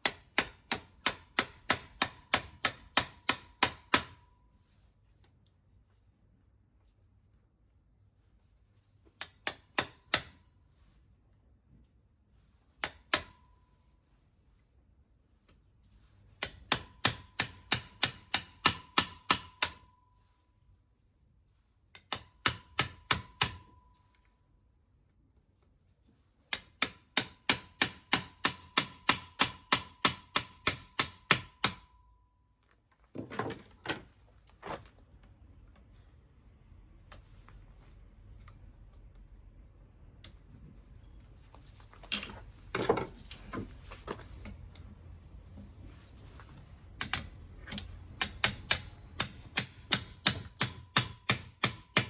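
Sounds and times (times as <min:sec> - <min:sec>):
hammer striking metal: 0:00.0 - 0:04.4, 0:09.2 - 0:10.4, 0:12.8 - 0:13.5, 0:16.4 - 0:20.0, 0:22.0 - 0:23.9, 0:26.5 - 0:32.0, 0:47.0 - 0:52.0.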